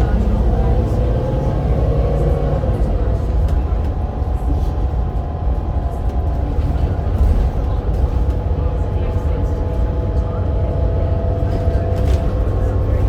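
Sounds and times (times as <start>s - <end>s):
bus diesel engine rumbling: 0.0s - 13.0s.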